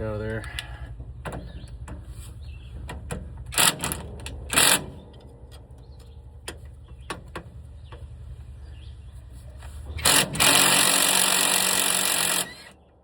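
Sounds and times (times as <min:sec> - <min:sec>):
power wrench bursts: 0:03.6 - 0:05.0, 0:10.0 - 0:12.8.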